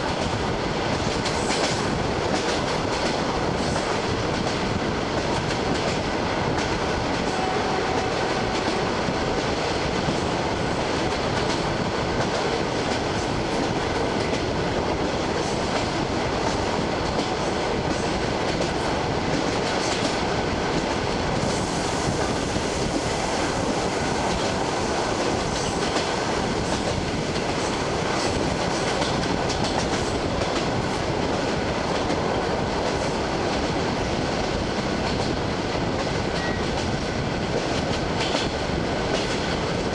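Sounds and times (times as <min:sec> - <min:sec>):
clickety-clack over rail joints: 0:00.0 - 0:39.9
train wheels rumbling on rails: 0:00.0 - 0:39.9.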